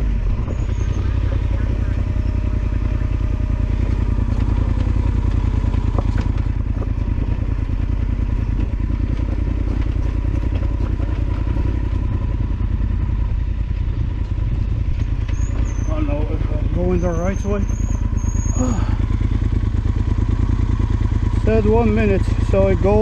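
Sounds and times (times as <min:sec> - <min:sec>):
motorcycle engine running: 0:00.0 - 0:23.0
light knocks and clatter: 0:03.9 - 0:07.5, 0:08.4 - 0:12.1.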